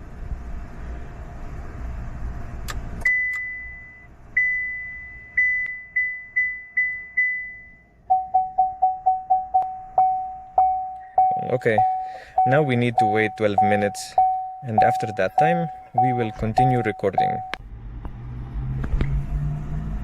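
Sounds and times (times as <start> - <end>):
low hum: 0.0 - 18.2
car warning chime dinging: 3.0 - 17.6.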